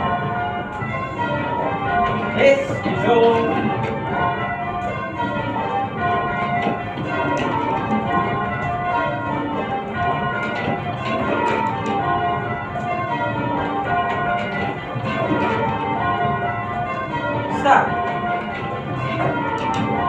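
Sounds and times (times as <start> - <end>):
church bells change ringing: 0.0 - 20.0.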